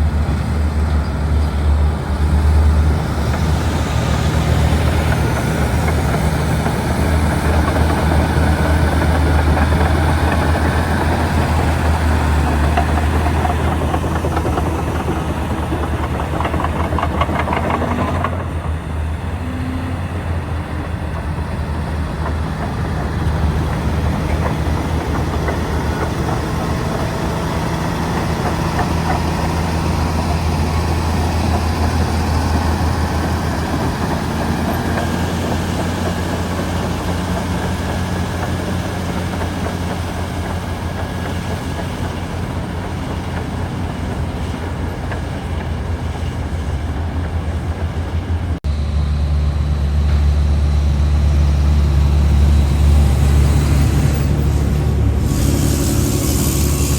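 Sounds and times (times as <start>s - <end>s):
bulldozer diesel engine running: 0.0s - 56.9s
steel tracks rattling: 0.1s - 48.6s, 50.1s - 56.9s.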